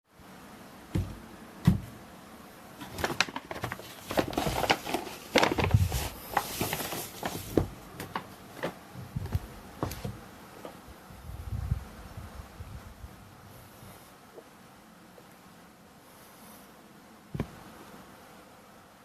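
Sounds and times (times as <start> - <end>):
dull thumps of a box: 0.9 - 2.0, 2.8 - 10.8, 17.3 - 17.6
packaging clicks and taps: 2.8 - 8.8
packaging rustling: 2.8 - 10.2.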